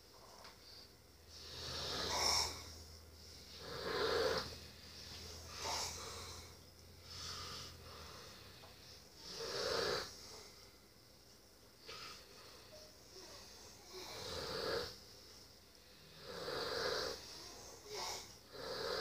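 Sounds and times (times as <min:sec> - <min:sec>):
faint low hum: 0:00.0 - 0:19.0
person snoring: 0:01.3 - 0:08.6, 0:09.2 - 0:10.4, 0:12.8 - 0:15.0, 0:16.0 - 0:19.0.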